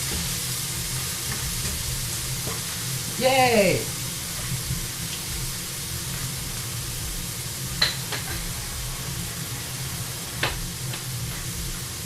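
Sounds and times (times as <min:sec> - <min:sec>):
meat sizzling in a pan: 0:00.0 - 0:12.0.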